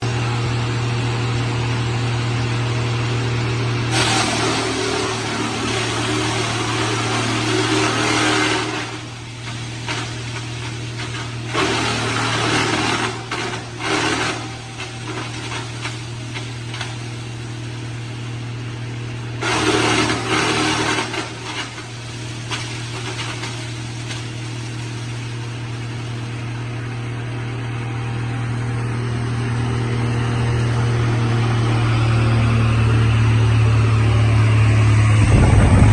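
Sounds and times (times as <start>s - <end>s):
log crusher droning: 0.0s - 35.9s
wood grinding noise: 3.9s - 17.2s, 19.4s - 24.6s.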